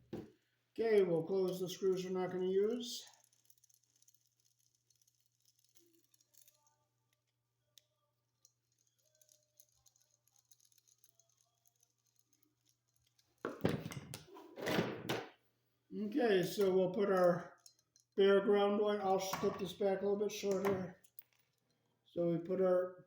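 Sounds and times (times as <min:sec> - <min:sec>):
screws clicking and squeaking: 0:01.4 - 0:13.4.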